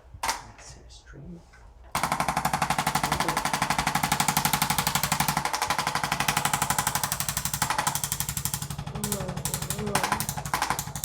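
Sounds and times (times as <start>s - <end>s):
percussion massager hammering: 2.1s - 11.0s
motor hum: 3.0s - 11.0s.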